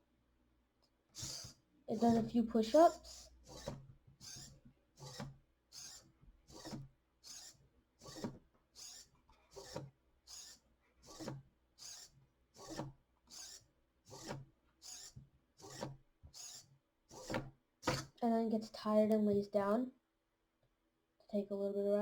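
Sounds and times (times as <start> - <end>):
servos whirring: 1.2 - 18.2.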